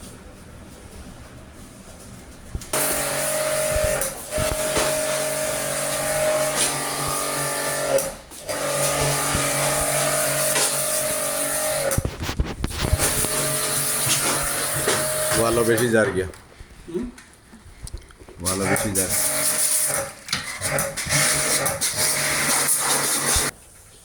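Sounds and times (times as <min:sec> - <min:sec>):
pressure washer motor whine: 0:02.8 - 0:12.1, 0:12.7 - 0:16.0, 0:18.5 - 0:23.5
water spray hissing: 0:21.1 - 0:23.5.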